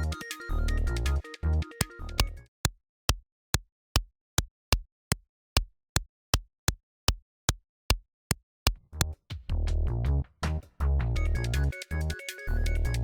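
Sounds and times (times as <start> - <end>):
background music with bass line: 0.0 - 2.5, 8.8 - 13.0
synthesized footstep thumps: 2.2 - 2.4, 8.7 - 11.5.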